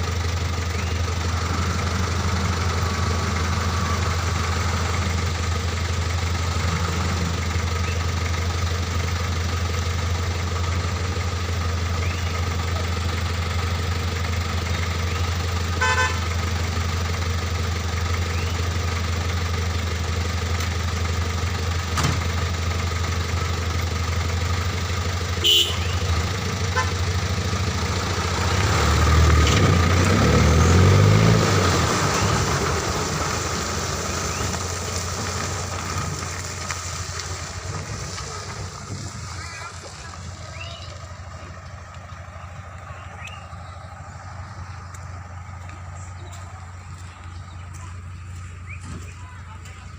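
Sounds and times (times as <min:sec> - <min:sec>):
vehicle engine idling: 0:00.0 - 0:49.9
vehicle revving and passing: 0:01.3 - 0:08.0, 0:25.6 - 0:49.2
horn toots: 0:15.8 - 0:16.4, 0:25.4 - 0:27.0.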